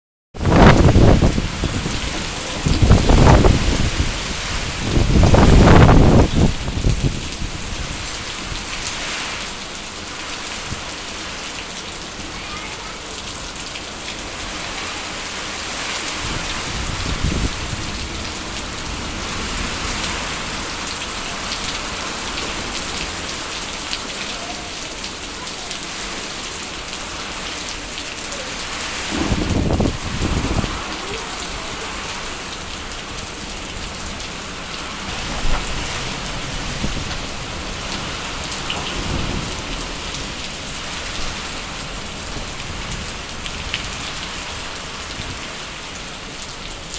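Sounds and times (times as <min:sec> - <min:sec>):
heavy rain falling: 0:00.4 - 0:46.9
low rumbles: 0:28.7 - 0:44.0.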